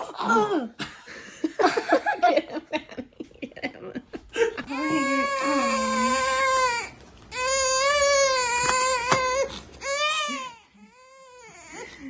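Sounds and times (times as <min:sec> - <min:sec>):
baby crying: 0:04.6 - 0:12.0.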